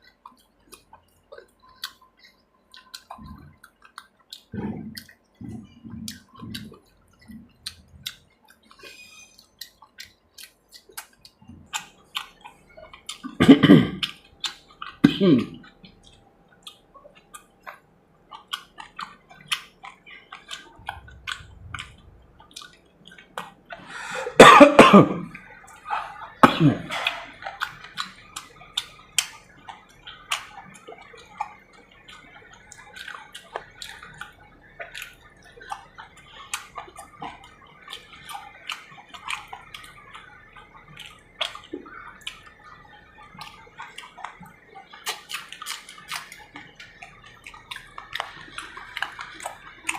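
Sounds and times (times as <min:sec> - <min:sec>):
wet chewing: 0:00.0 - 0:24.4, 0:25.1 - 0:49.9
cough-like burst: 0:13.4 - 0:14.0, 0:15.0 - 0:15.6, 0:24.2 - 0:25.3, 0:26.4 - 0:27.2.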